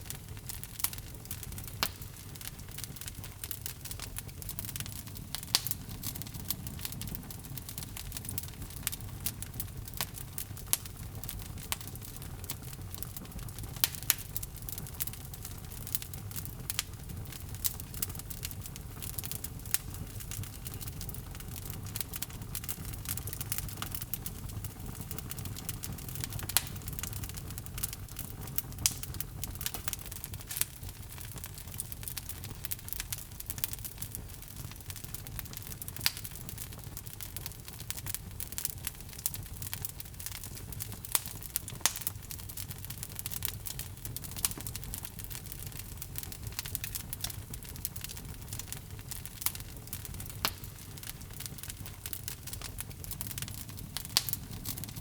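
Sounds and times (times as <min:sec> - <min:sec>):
fire rumbling and hissing: 0:00.0 - 0:55.0
wood crackling and popping: 0:00.0 - 0:55.0.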